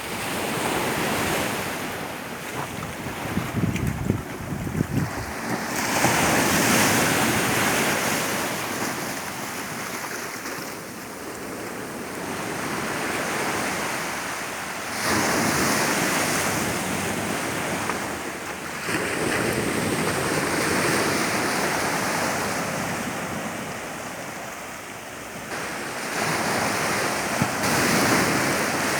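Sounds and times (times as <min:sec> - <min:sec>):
wind on microphone: 0:00.0 - 0:10.2
sea waves washing onto beach: 0:00.0 - 0:28.9.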